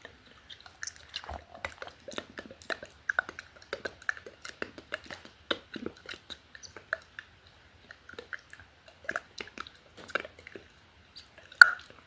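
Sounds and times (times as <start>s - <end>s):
wet mouth clicks and smacks: 11.6s - 11.9s.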